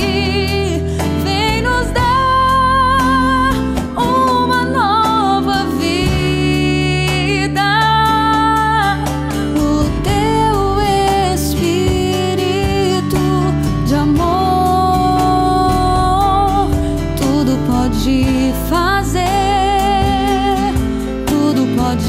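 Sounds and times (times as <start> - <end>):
guitar and band accompaniment: 0.0 - 22.0.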